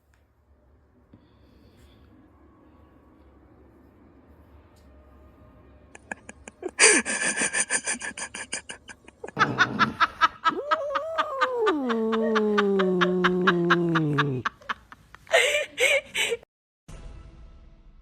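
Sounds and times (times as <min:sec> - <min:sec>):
person laughing: 0:06.0 - 0:16.4.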